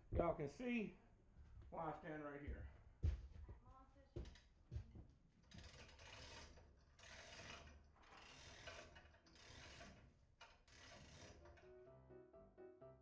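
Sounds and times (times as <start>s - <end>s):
ratchet clicking: 5.5s - 11.6s.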